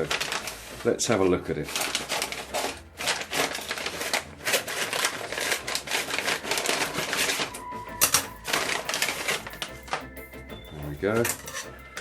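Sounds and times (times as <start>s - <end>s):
packaging crinkling and rattling: 1.7s - 10.1s.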